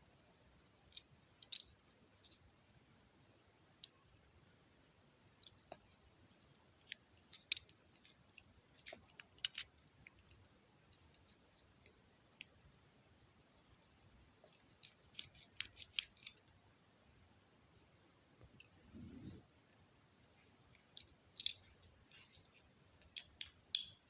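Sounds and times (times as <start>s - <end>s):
plastic bricks clicking: 20.7s - 22.3s, 23.0s - 24.0s.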